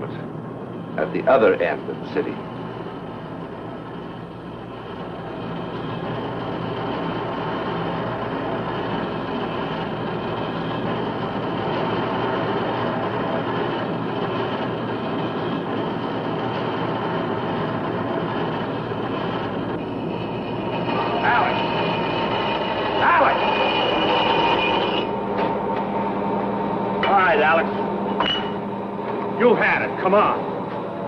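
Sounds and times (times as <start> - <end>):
heavy machinery running: 0.0 - 31.0.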